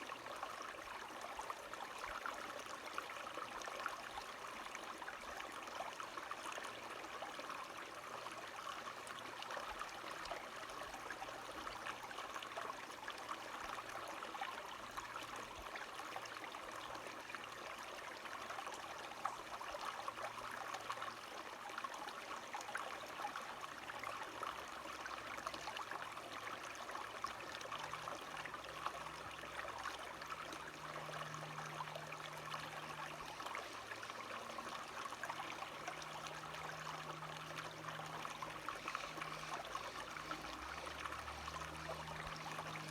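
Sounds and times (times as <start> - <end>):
stream water rushing: 24.7 - 42.9
faint low drone: 27.7 - 42.9.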